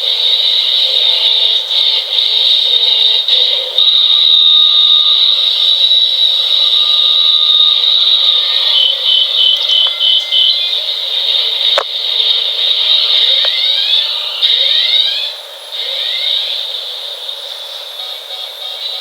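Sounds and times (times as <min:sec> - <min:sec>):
shrill high-pitched alarm tone: 0:05.2 - 0:11.0
short beeps: 0:08.7 - 0:10.7.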